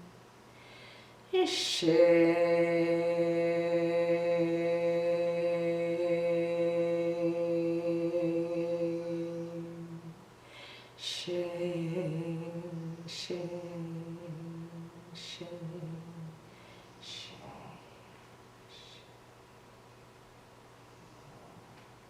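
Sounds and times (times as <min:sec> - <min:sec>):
breathy hiss: 0:00.0 - 0:01.8, 0:09.3 - 0:19.2
woman chanting a held tone: 0:01.3 - 0:10.2, 0:11.0 - 0:16.4, 0:17.0 - 0:19.1.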